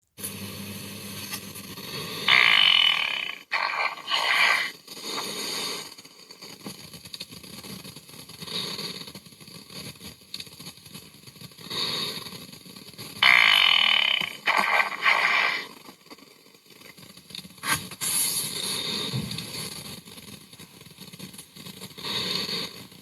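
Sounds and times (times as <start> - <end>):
fart sound effects: 2.3 - 4.7, 13.2 - 15.8.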